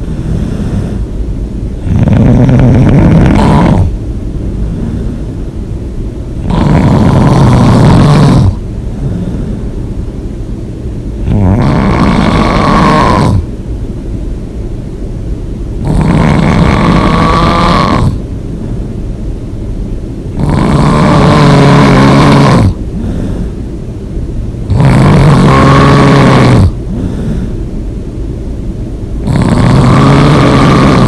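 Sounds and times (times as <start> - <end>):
person snoring loudly: 1.8 - 4.0, 6.4 - 9.6, 11.2 - 13.5, 15.8 - 18.2, 20.3 - 23.5, 24.7 - 27.6, 29.2 - 31.0.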